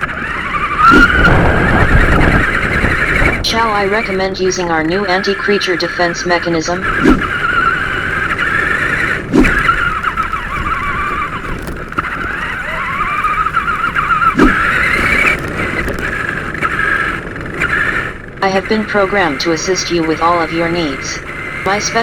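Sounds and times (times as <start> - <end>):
electric motor whining: 0.0 - 22.0
short thumps: 0.8 - 4.2, 6.2 - 18.1.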